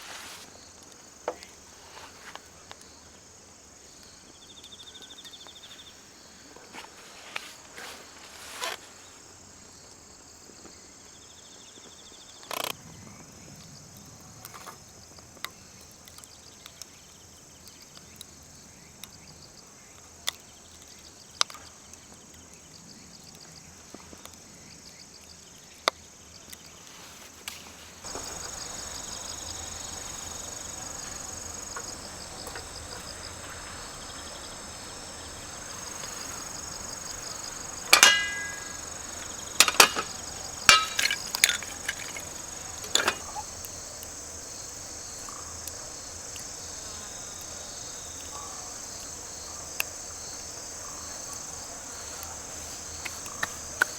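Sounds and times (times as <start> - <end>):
crickets chirping trill: 0.0 - 53.9
loud metallic clink: 37.8 - 43.3.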